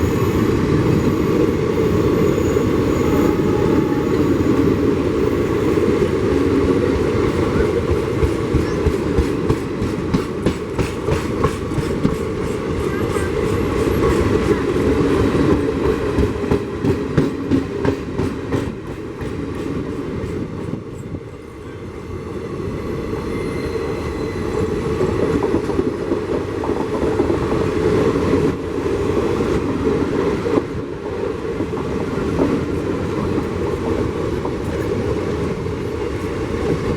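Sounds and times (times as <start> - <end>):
train passing with rushing rumble: 0.0 - 36.9
train wheels clacking over rail joints: 7.9 - 20.9.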